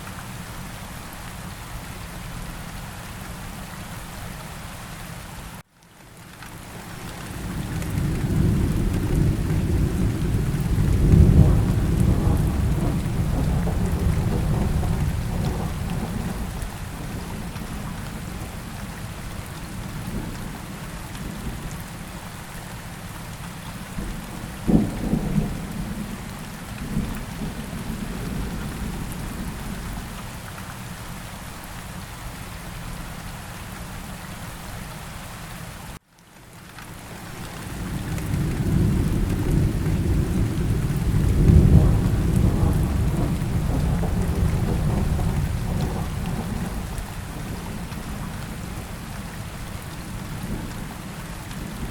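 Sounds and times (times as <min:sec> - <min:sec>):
steady rain: 0:00.0 - 0:51.9
low thunder rumble: 0:07.4 - 0:18.7, 0:23.9 - 0:30.2, 0:37.7 - 0:51.0
sharp thunderclap: 0:08.3 - 0:16.6, 0:38.0 - 0:48.0.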